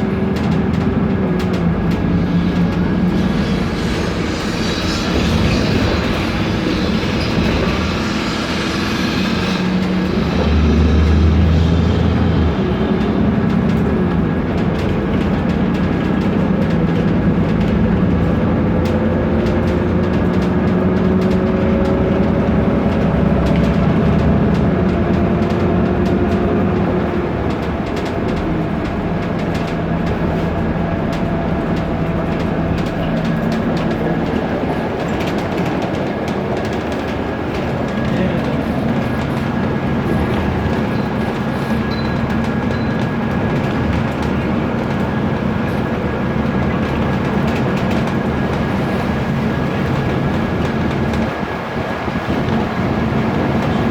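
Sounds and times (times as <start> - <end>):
bus diesel engine drone: 0.0 - 53.9
rising whine: 1.5 - 14.5.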